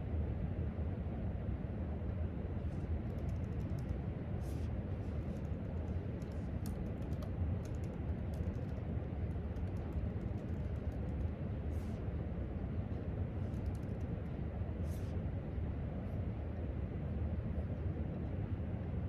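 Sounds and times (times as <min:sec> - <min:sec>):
low background hum: 0:00.0 - 0:19.0
typing on laptop keyboard: 0:03.0 - 0:11.3, 0:13.5 - 0:14.1.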